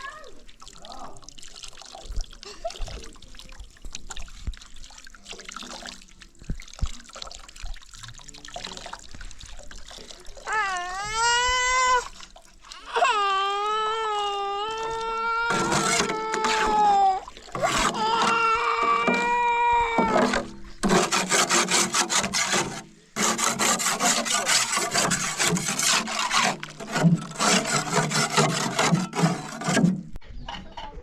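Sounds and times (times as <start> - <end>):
baby crying: 10.5 - 12.1, 12.8 - 20.4
rapid rasping scraping: 15.5 - 16.8, 17.5 - 18.4, 20.1 - 30.2.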